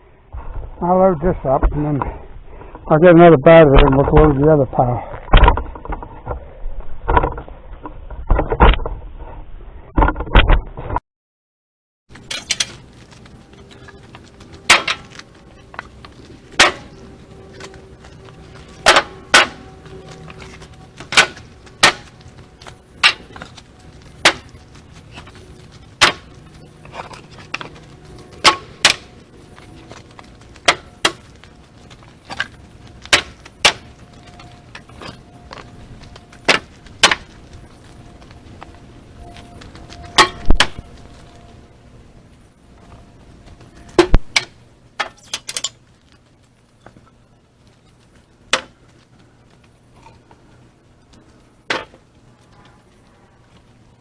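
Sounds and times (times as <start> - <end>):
firewood knocking onto pile: 21.0 - 22.1, 32.3 - 33.9, 36.5 - 37.3.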